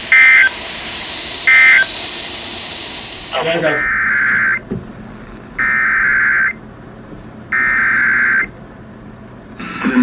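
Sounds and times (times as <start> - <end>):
faint radio hiss: 0.0 - 5.9
warbling digital data tones: 0.0 - 6.6, 7.5 - 8.5.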